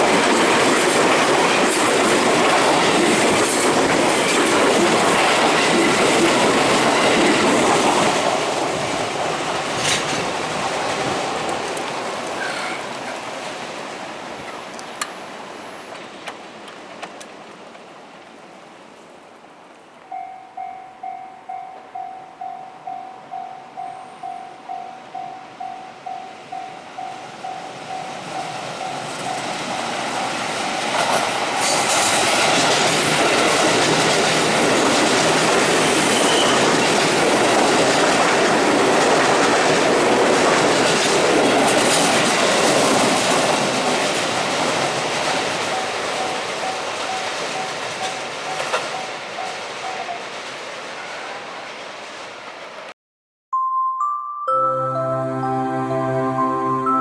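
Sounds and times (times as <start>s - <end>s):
train wheels clattering: 0.0s - 13.1s, 28.0s - 51.4s
level-crossing bell ringing: 20.1s - 30.1s, 53.6s - 57.0s.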